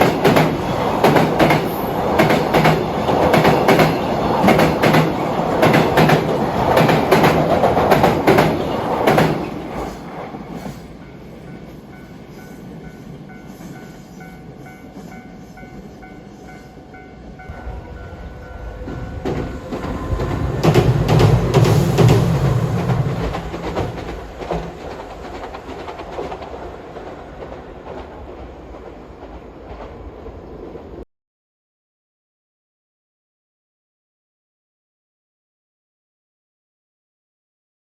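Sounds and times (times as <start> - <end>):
train wheels clattering: 0.0 - 10.9, 18.4 - 30.1
train rumble: 0.0 - 31.0.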